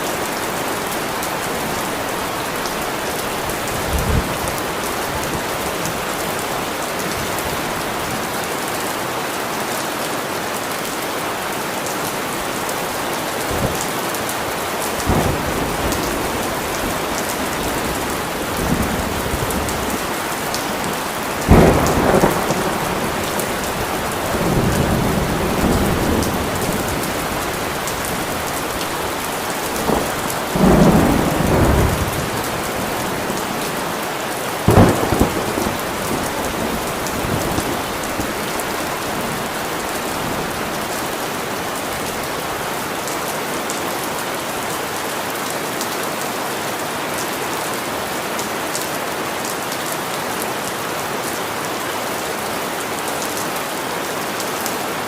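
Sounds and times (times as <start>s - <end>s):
steady rain falling: 0.0s - 55.0s
thunder rumbling: 15.0s - 33.4s, 34.6s - 41.2s.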